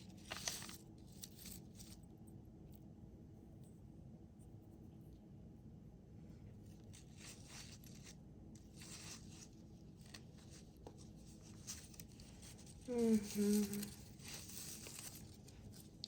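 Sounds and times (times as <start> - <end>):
jewelry rustling and scraping: 0.0 - 2.1, 6.6 - 16.0.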